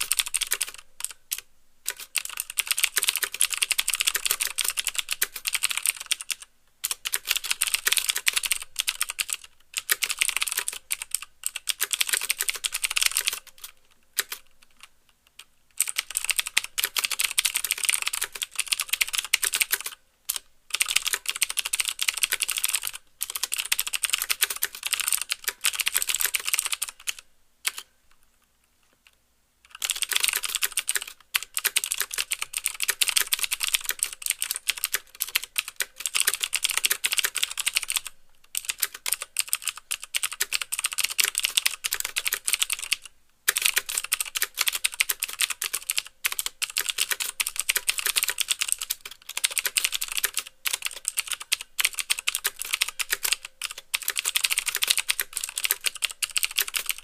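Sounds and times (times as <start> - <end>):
typing on a mechanical keyboard: 0.0 - 14.9, 15.8 - 27.9, 29.7 - 57.0.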